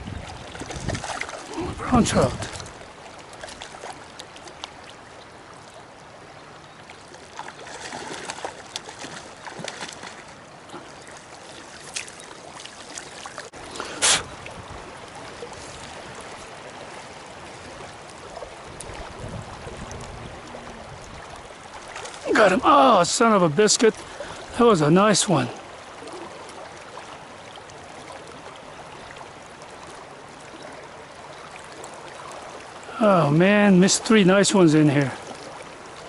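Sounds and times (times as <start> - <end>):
river water running: 0.0 - 36.0.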